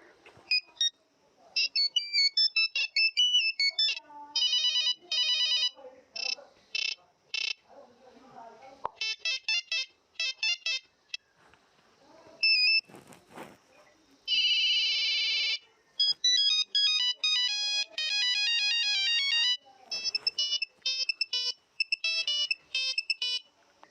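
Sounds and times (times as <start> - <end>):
monophonic ringtone melodies: 1.6 - 7.6, 9.0 - 11.2, 12.4 - 12.8, 14.3 - 23.5.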